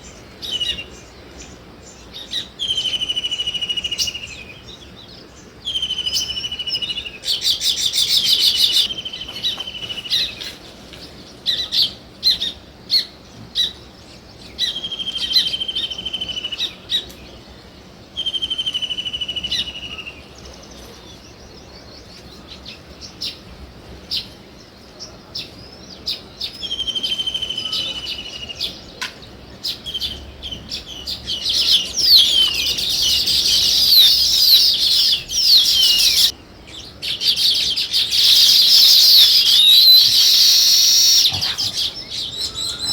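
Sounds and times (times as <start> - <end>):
sparrows chirping: 0.0 - 42.9
buzzy bird trills: 31.4 - 36.3, 37.2 - 42.9.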